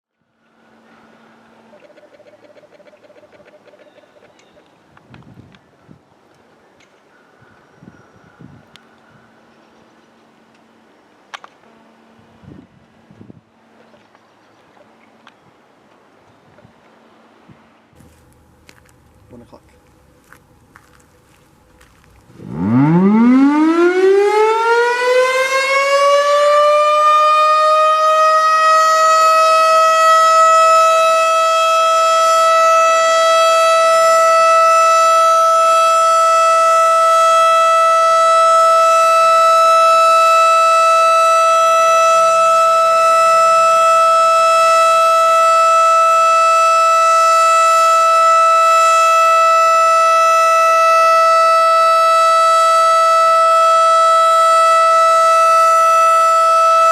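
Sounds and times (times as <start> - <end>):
outdoor warning siren rising: 18.0 - 56.9.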